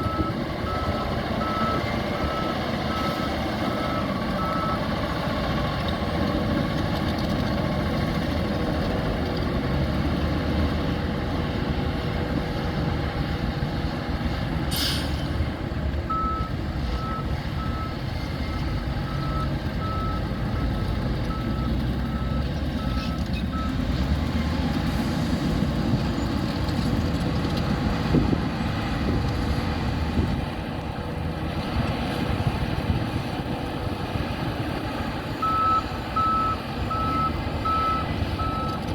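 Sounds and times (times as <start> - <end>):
reversing alarm beeping: 0.0 - 4.9, 16.1 - 23.8, 35.4 - 38.8
construction machinery diesel rumble: 0.0 - 38.9.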